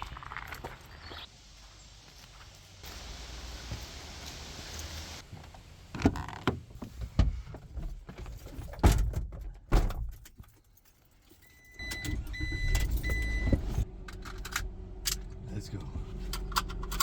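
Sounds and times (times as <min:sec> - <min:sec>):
knocks and clunks inside vehicle: 0:05.9 - 0:10.2, 0:11.9 - 0:17.0
vehicle warning chime beeping: 0:11.4 - 0:13.8
low engine rumble: 0:12.8 - 0:17.0.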